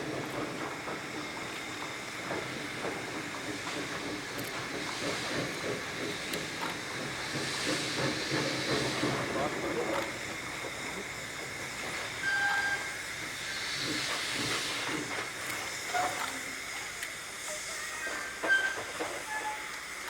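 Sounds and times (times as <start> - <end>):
steam locomotive hissing: 0.0 - 20.0
high squeaks: 17.7 - 19.8.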